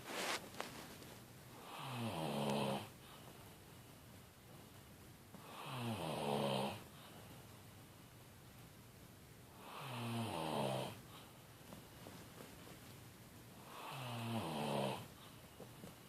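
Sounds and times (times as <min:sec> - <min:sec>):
man snoring: 0:01.6 - 0:02.9, 0:05.4 - 0:06.8, 0:09.6 - 0:11.0, 0:13.7 - 0:15.1.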